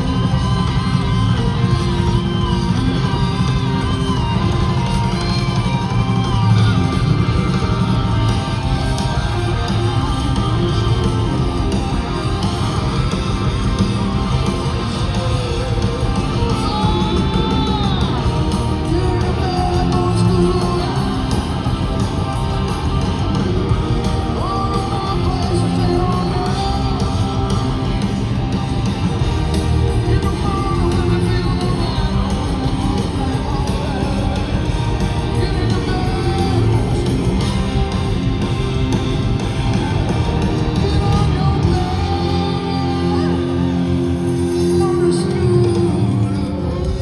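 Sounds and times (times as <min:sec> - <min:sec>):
person singing and shouting: 0:00.0 - 0:38.1, 0:39.8 - 0:47.0
rock band playing: 0:00.0 - 0:47.0.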